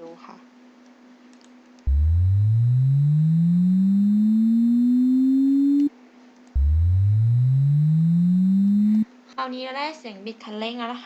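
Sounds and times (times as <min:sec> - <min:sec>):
synth tone gliding up in pitch: 0:01.9 - 0:05.9, 0:06.6 - 0:09.0.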